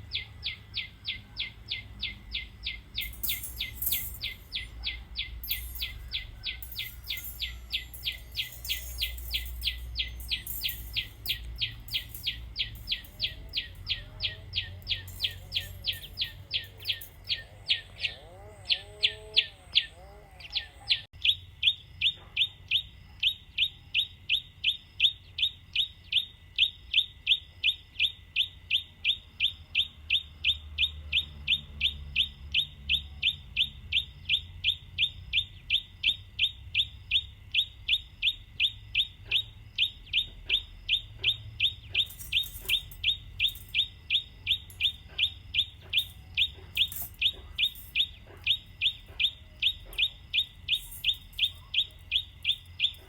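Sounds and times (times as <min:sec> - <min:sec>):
bird chirping: 0:00.0 - 0:53.0.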